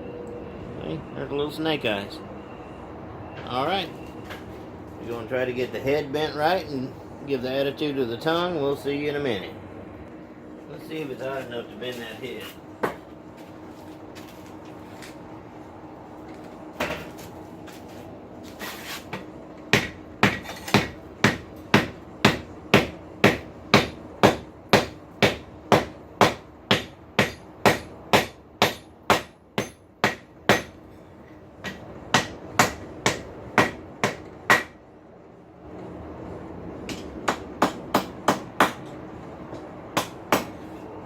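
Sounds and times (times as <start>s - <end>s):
steady hum: 5.6s - 41.0s
hammer striking steel on anvil: 19.8s - 30.8s, 31.6s - 34.8s.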